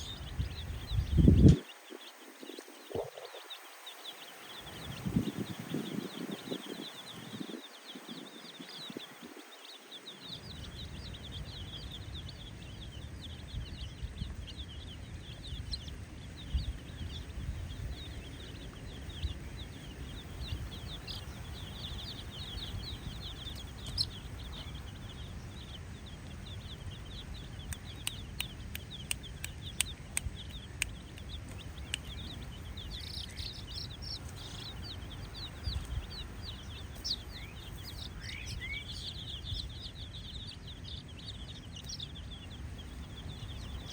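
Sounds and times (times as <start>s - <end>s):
baby chicks peeping: 0.0s - 43.9s
sharp clicks: 27.6s - 32.3s.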